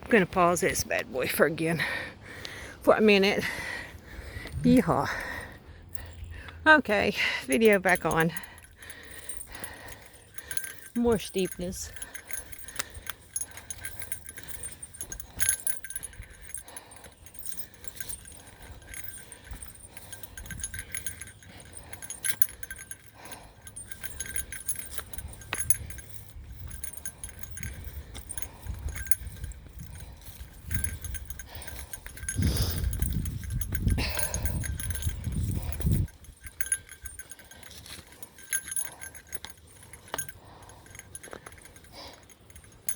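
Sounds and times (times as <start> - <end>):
bear bell jingling: 0.0 - 42.9
heavy breathing: 1.7 - 42.9.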